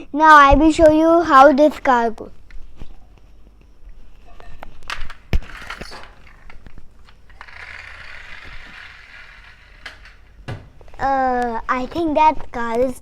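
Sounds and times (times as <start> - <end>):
toy car clicks: 4.9 - 10.4
toy car whirring across floor: 4.9 - 10.5.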